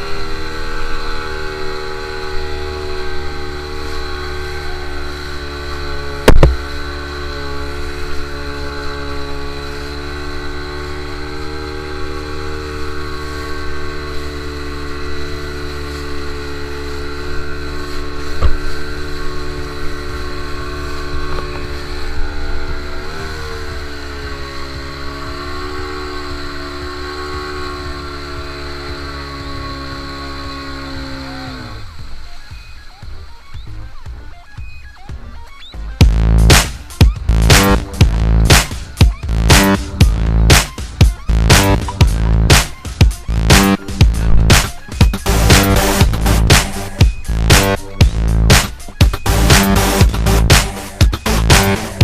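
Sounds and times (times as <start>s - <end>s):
motorboat engine running: 0.0s - 52.0s
sharp knock: 6.3s - 6.6s.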